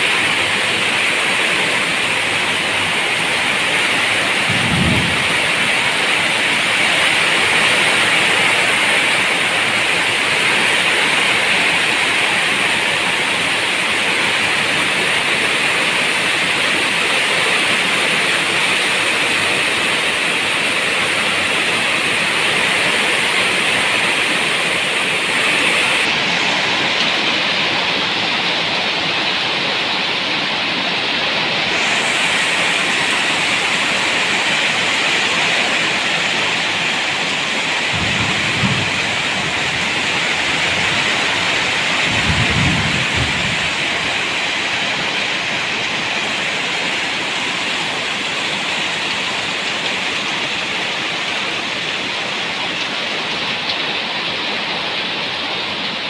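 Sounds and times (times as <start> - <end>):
heavy rain: 0.0 - 56.0
low thump: 4.5 - 5.6.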